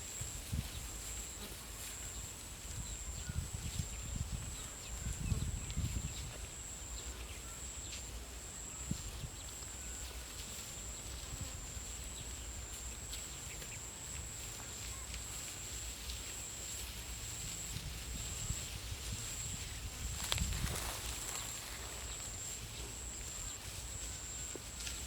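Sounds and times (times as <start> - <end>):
high-pitched insect drone: 18.2 - 24.8.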